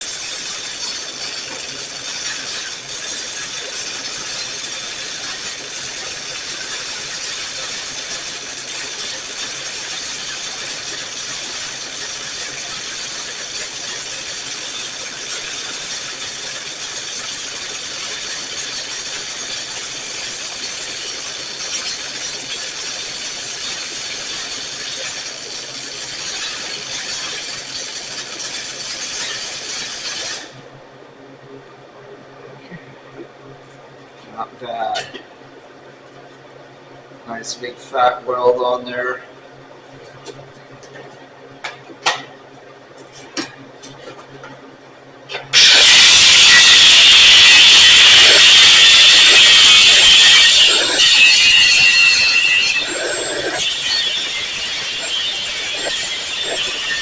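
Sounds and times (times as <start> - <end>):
welding arc crackling hiss: 0.0 - 30.6, 45.3 - 57.0.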